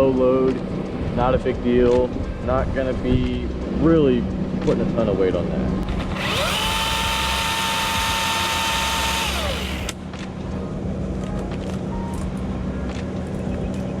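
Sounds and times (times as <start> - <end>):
chainsaw motor whine: 5.9 - 10.0.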